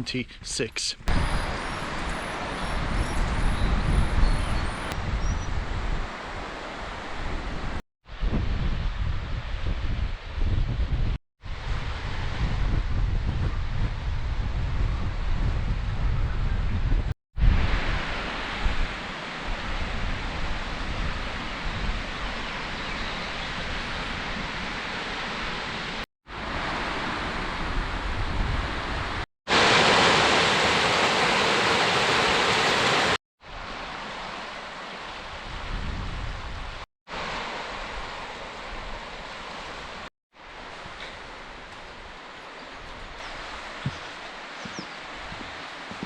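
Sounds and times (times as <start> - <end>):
wind rushing on microphone: 1.0 - 33.8, 35.2 - 38.1.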